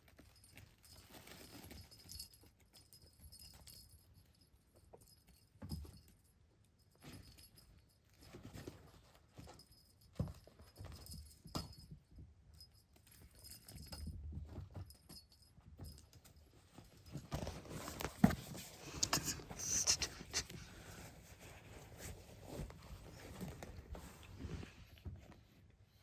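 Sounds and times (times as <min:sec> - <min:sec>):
kittens tapping and scuffing: 0:06.8 - 0:25.7.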